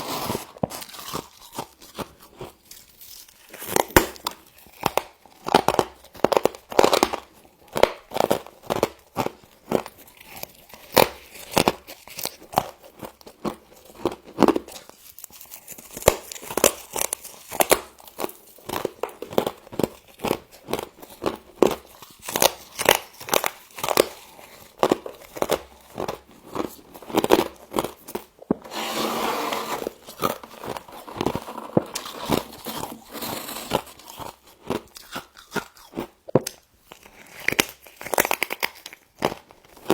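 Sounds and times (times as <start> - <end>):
frost being crunched by chewing: 0.6 - 28.5, 33.7 - 39.9.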